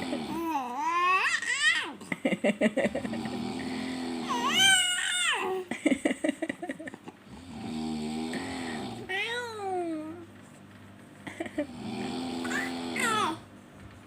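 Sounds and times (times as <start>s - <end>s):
man snoring: 0.0s - 0.6s, 2.9s - 4.7s, 7.3s - 9.1s, 11.5s - 13.4s.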